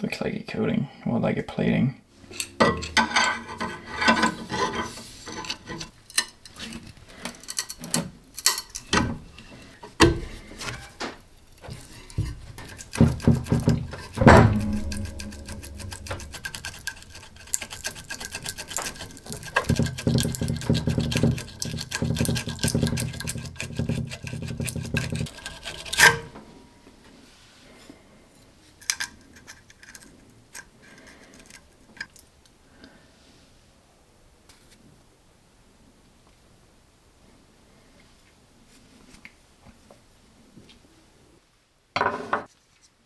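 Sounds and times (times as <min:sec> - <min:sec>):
rapid clicking and scraping: 0:10.6 - 0:26.3
low hum: 0:12.6 - 0:19.0.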